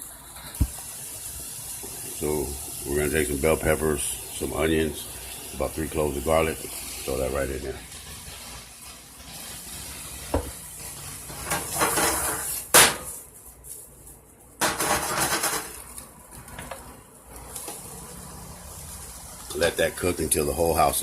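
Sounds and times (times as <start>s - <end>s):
vegetables and meat sizzling in pan: 0.0s - 13.5s, 14.6s - 21.0s
utensil stirring and knocking pan: 10.2s - 13.2s, 14.6s - 15.8s.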